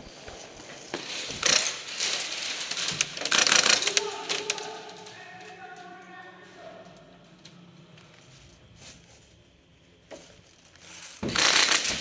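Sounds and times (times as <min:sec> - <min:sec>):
airsoft gun rapid clicks: 0:03.1 - 0:04.7, 0:11.2 - 0:12.0.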